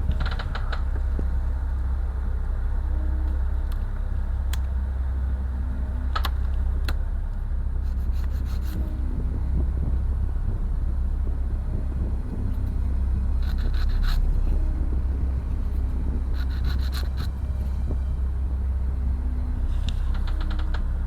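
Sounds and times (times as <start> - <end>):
low hum: 0.0 - 21.0
wooden parts clicking and rubbing: 20.0 - 20.9.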